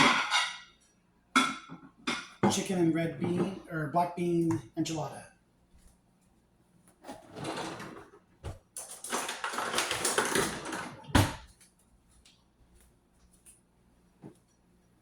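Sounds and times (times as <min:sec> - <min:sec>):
rustling and scraping: 0:05.8 - 0:13.6.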